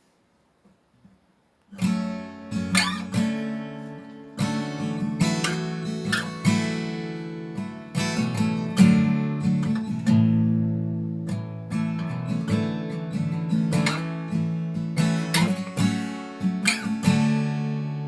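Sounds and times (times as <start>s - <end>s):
acoustic guitar strumming: 1.7s - 18.0s.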